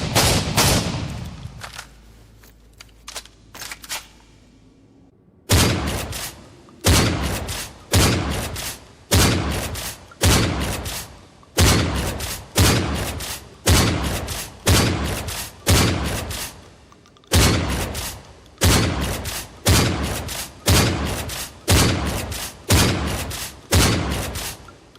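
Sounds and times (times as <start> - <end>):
loud gunshots with echo: 0.0 - 1.6, 5.5 - 16.6, 17.3 - 24.6.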